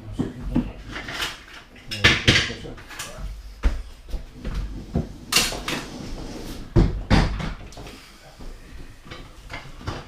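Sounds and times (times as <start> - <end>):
hard objects knocking and bumping: 0.2 - 3.0, 6.7 - 7.9.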